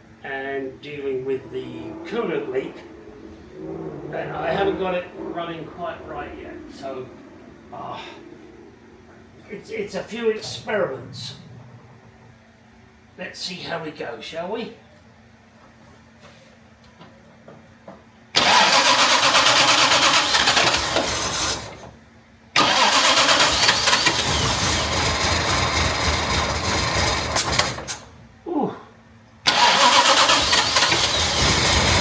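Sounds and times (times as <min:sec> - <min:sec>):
engine cranking on starter: 0:18.3 - 0:28.1, 0:29.4 - 0:32.0.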